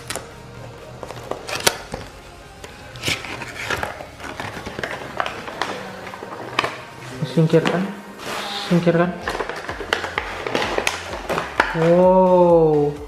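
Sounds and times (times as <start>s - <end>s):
faint background music: 0.0s - 13.0s
cardboard packaging being handled: 2.9s - 12.0s.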